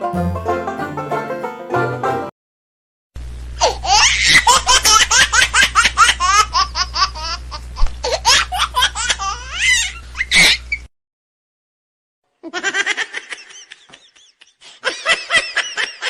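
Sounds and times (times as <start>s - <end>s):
high-pitched laughter: 3.6s - 7.4s, 12.4s - 16.0s.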